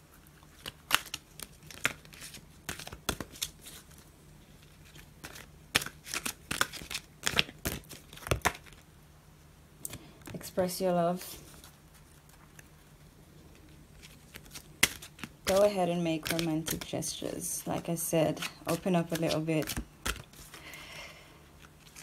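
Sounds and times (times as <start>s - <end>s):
cards being shuffled: 0.1s - 8.8s, 13.5s - 20.7s, 21.6s - 22.0s.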